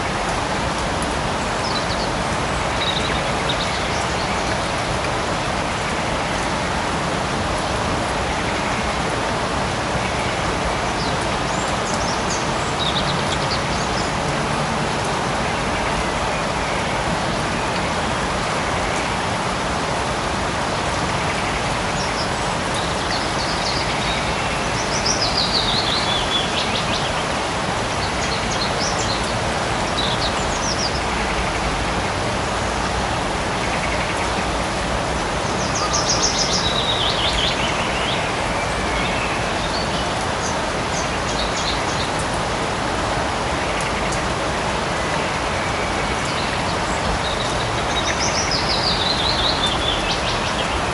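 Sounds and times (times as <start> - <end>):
light rain falling: 0.0 - 50.9
birds singing: 1.4 - 4.7, 10.0 - 14.2, 21.1 - 31.7, 35.3 - 42.3, 45.0 - 50.9.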